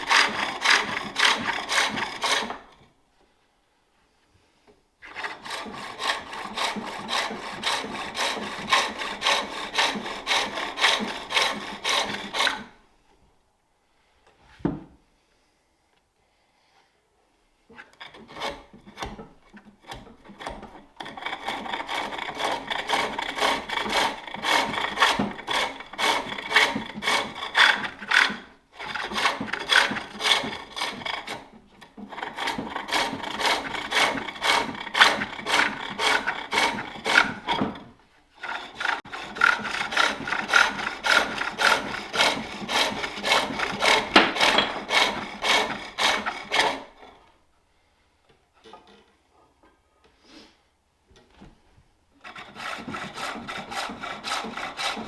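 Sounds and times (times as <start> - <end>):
tool scraping wood on a lathe: 0.0 - 2.9, 5.0 - 12.8, 17.8 - 47.3, 52.2 - 55.0.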